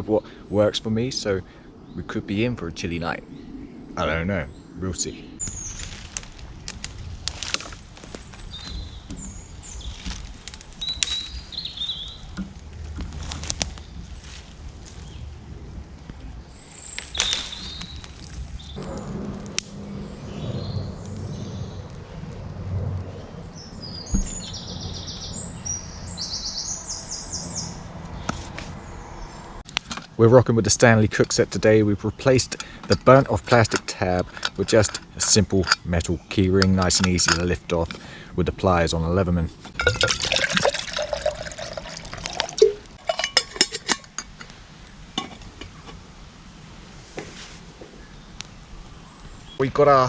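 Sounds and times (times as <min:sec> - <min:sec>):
songbird singing: 0:00.0 - 0:19.0, 0:19.7 - 0:50.0
metal pot and lid clinking: 0:39.8 - 0:44.5, 0:45.2 - 0:45.8.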